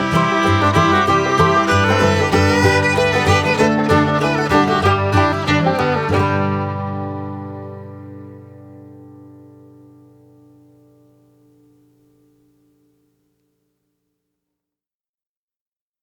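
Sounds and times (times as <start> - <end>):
bluegrass music with fiddle and banjo: 0.0 - 8.3.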